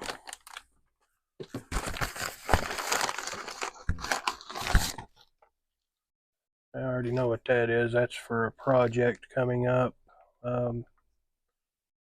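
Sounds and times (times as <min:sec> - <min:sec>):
packaging bag crinkling: 0:00.0 - 0:00.7, 0:01.5 - 0:05.1.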